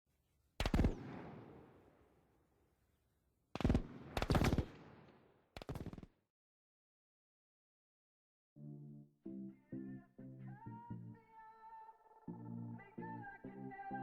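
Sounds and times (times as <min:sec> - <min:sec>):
automatic gunfire bursts: 0:00.6 - 0:01.9, 0:03.5 - 0:06.1.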